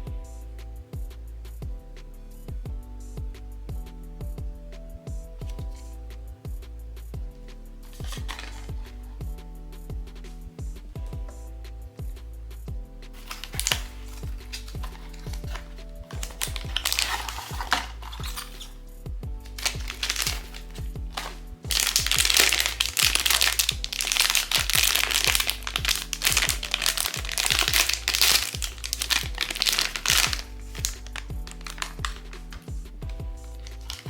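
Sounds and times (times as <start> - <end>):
background music: 0.0 - 34.0
packaging crinkling: 8.0 - 8.7, 13.2 - 18.8, 19.5 - 34.0.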